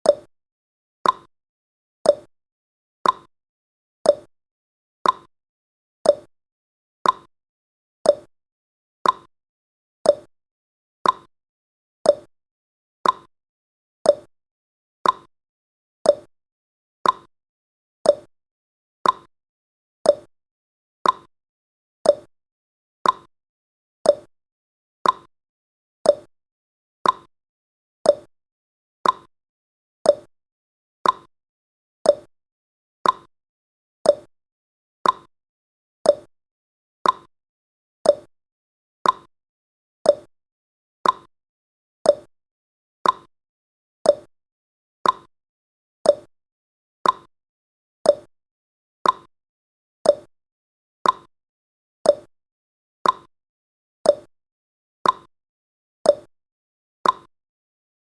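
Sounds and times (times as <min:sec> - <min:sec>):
clock ticking: 0:35.0 - 0:35.3, 0:37.0 - 0:37.3, 0:41.0 - 0:41.3, 0:45.0 - 0:45.3, 0:53.0 - 0:53.3.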